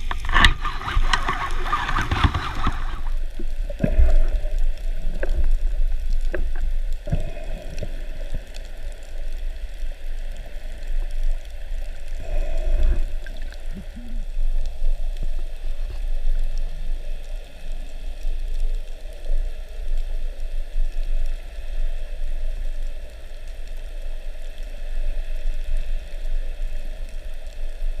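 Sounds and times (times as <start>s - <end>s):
sharp clicks and knocks: 0.0s - 3.2s
underwater current rumble: 0.0s - 27.9s.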